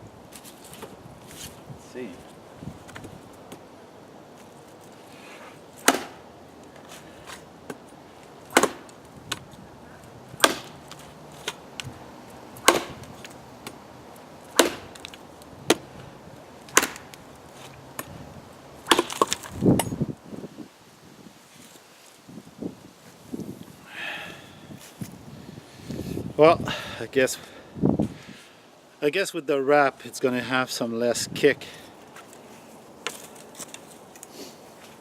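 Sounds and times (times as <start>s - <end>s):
machete chopping into wood: 5.8s - 6.2s, 8.5s - 9.4s, 10.4s - 11.6s, 12.6s - 13.8s, 14.5s - 15.1s, 16.7s - 17.2s, 18.8s - 20.0s.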